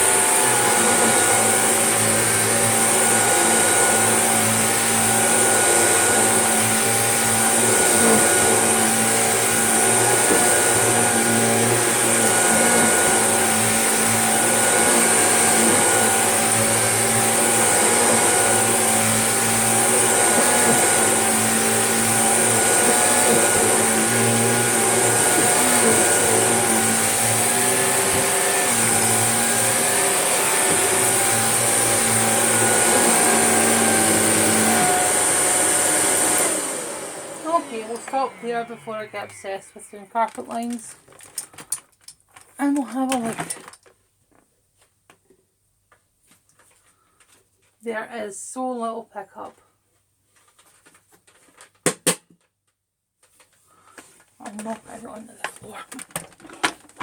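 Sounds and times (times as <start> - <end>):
vacuum cleaner on carpet: 0.0 - 40.9.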